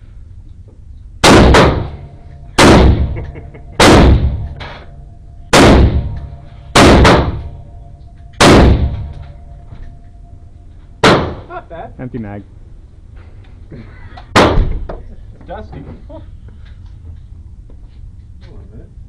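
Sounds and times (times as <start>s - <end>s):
gunshots echoing indoors: 1.2s - 10.1s, 10.9s - 11.5s
fainter bangs: 1.2s - 11.6s, 14.2s - 15.1s.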